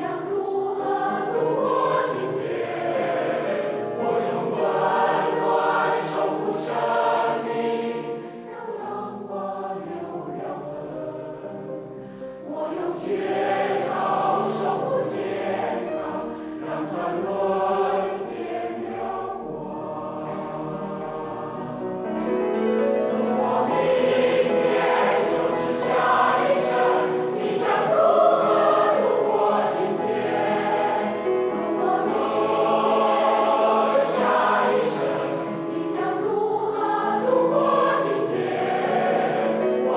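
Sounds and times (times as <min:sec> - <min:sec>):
choir singing: 0:00.0 - 0:39.9.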